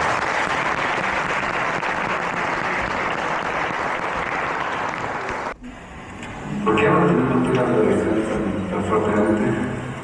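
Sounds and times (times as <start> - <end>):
audience applauding: 0.0 - 5.6.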